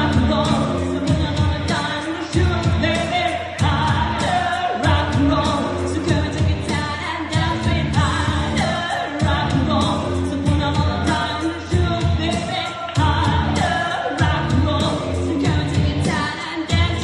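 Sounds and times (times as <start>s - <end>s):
pop-rock song with vocals: 0.0s - 17.0s.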